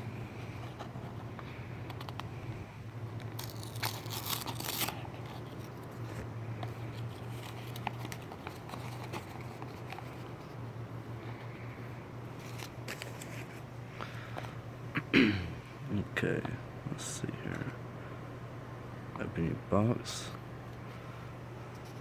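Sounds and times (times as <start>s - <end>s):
packaging tearing and crinkling: 3.2s - 5.9s.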